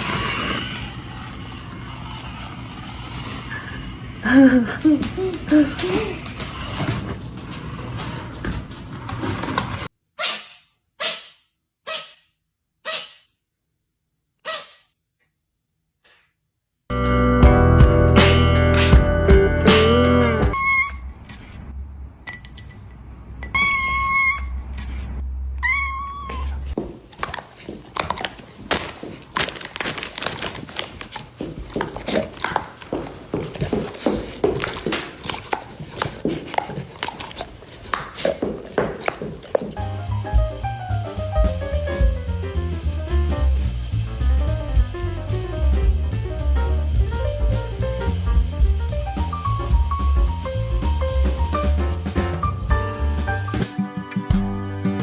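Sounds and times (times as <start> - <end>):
pet sneezing: 10.2 - 13.3, 14.4 - 14.9
cat meowing: 25.6 - 26.8.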